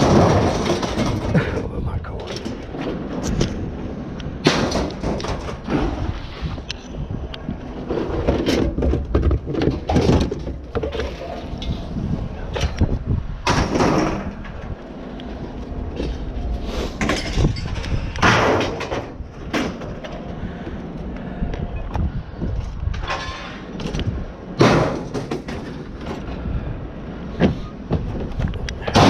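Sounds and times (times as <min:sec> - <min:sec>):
scrap metal knocks and clanks: 0:00.0 - 0:01.6, 0:15.9 - 0:20.4, 0:22.9 - 0:26.5
steady low rumble: 0:00.0 - 0:29.0.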